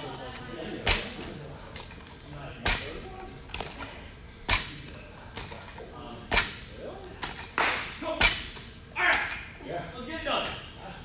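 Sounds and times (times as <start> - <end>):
sharp slaps with echo: 7.6 - 9.3.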